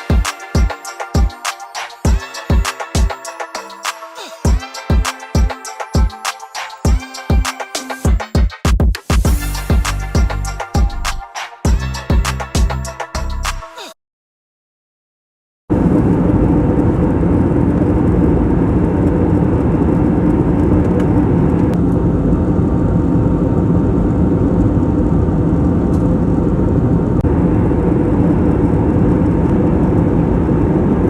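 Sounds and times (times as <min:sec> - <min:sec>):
airliner engine drone: 0:15.7 - 0:31.0.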